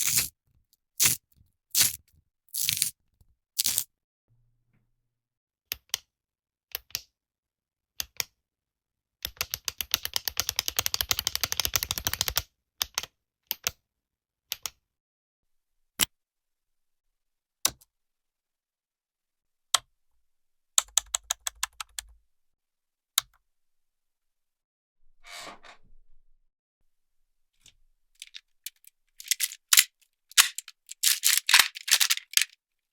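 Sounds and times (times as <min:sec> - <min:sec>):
typing on a keyboard: 0:09.2 - 0:13.8, 0:20.8 - 0:22.1, 0:29.2 - 0:32.5.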